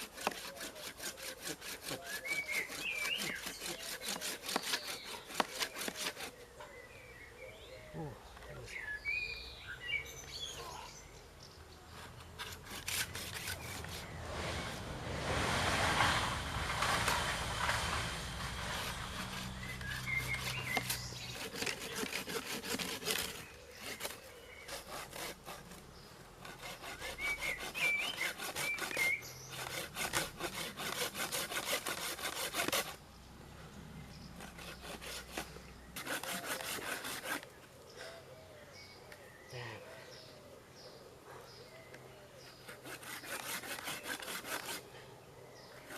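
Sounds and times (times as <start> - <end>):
hand saw cutting wood: 0.0 - 6.4, 11.9 - 33.0, 34.4 - 37.6, 42.5 - 45.0.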